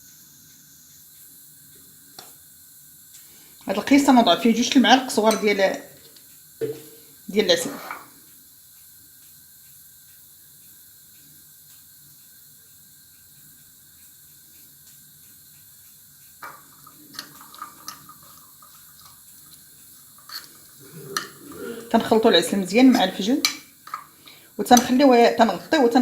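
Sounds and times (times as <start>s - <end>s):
faint steady hiss: 0.0s - 26.0s
spoon clinking against cup: 5.3s - 5.6s.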